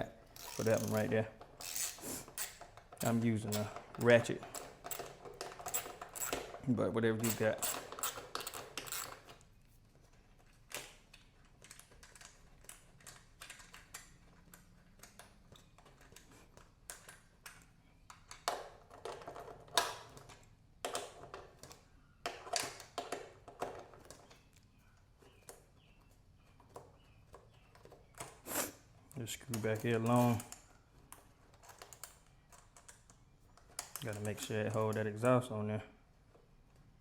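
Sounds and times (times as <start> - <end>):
socket ratchet clicking: 0.3 - 2.6, 3.5 - 6.5, 7.3 - 9.2.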